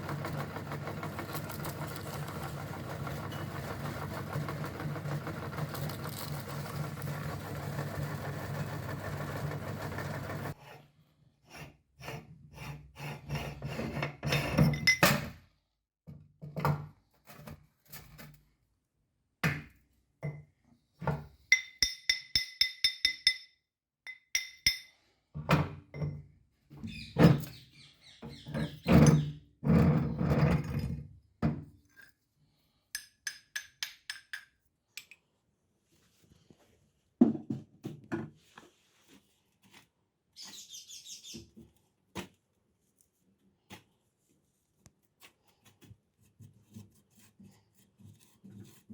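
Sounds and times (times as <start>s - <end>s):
meat grinder motor humming: 0.0s - 10.6s.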